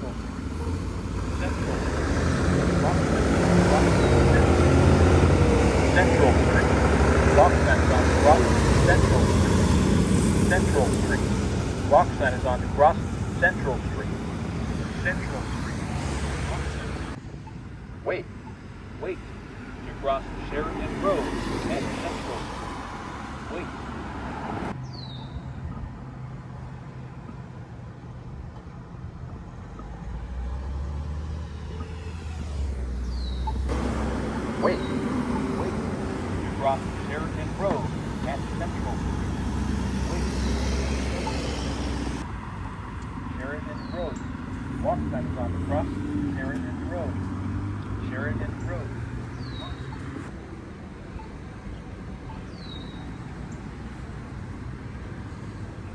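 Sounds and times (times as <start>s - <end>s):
vehicle engine rumbling: 0.0s - 55.9s
high falling chirp: 31.7s - 42.2s.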